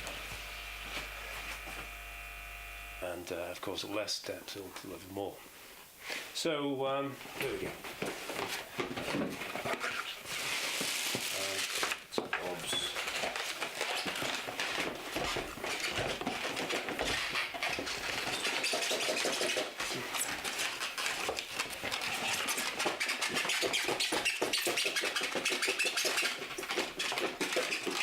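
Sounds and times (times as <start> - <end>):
packaging rustling and crinkling: 7.4 - 28.0.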